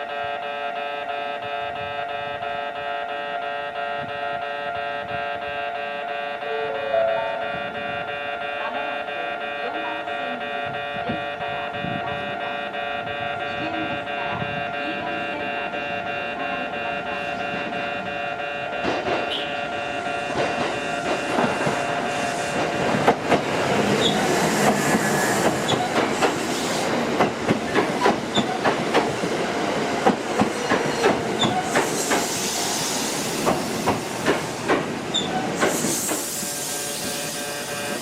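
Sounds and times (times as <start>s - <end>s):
faint level crossing alarm tone: 0.0s - 23.2s
train wheels clattering over rail joints: 20.3s - 29.4s, 30.0s - 32.6s, 33.4s - 36.4s
air hiss bursts: 31.6s - 34.7s, 35.5s - 38.0s.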